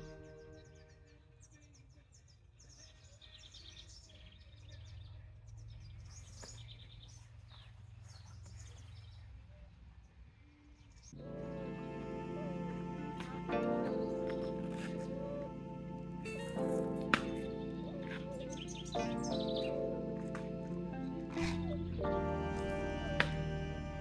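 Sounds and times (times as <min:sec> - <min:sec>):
music: 0:00.0 - 0:01.1, 0:11.2 - 0:24.0
small birds chirping: 0:00.0 - 0:24.0.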